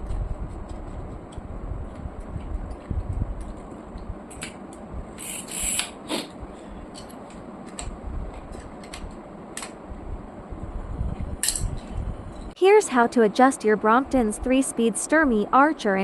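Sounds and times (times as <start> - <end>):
low rumble: 9.9 - 12.6.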